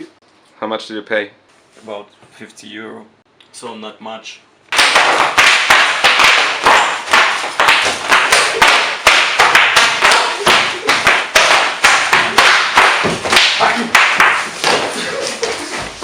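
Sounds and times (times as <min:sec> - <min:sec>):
sharp percussive hits: 0:04.7 - 0:14.9.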